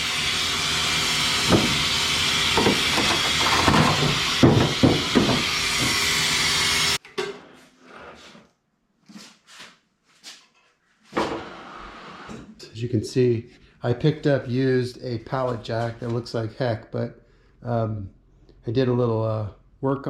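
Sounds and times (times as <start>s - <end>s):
knocks and clunks: 2.6s - 6.0s.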